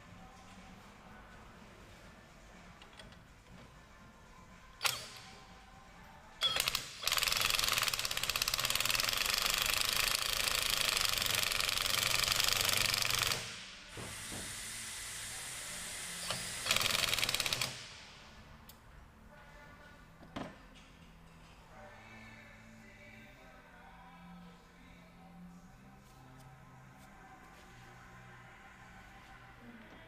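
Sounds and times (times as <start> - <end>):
impact wrench hammering: 6.4 - 14.5, 16.2 - 18.0.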